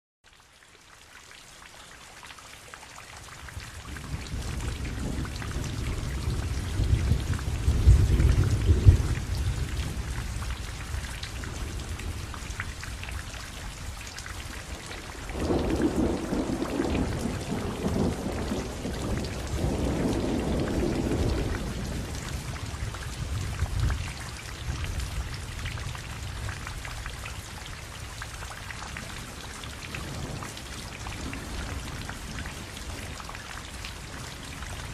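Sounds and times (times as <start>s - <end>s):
steady rain falling: 0.2s - 34.9s
rolling thunder: 3.9s - 12.9s, 14.7s - 26.6s.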